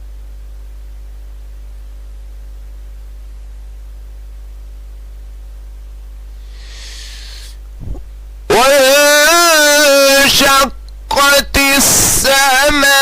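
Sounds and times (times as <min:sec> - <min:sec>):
low electrical hum: 0:00.0 - 0:13.0
faint hiss: 0:06.3 - 0:08.1.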